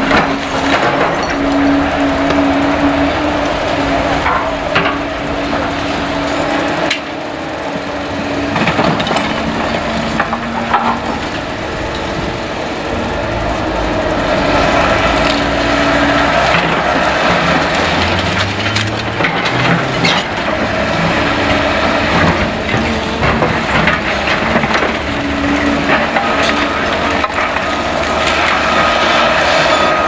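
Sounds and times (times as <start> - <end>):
excavator diesel engine: 0.0 - 30.0
hydraulic whine: 0.0 - 30.0
debris cracking and splintering: 8.5 - 30.0.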